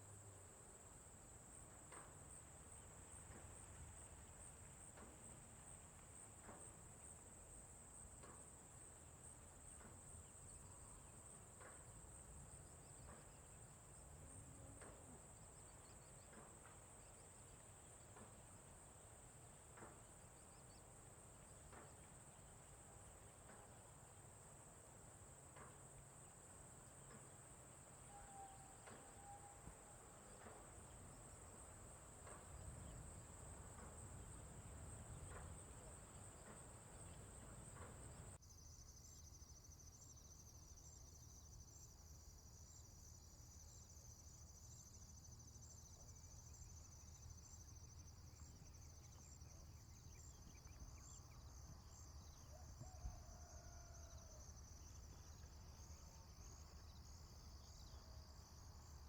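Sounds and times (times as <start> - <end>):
light ticks: 29.7 - 38.4.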